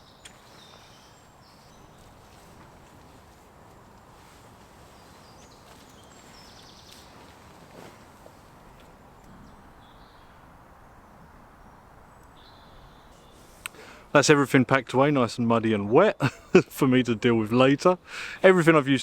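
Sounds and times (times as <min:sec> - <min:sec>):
small birds chirping: 0:00.0 - 0:14.0
outdoor background hiss: 0:00.0 - 0:19.0.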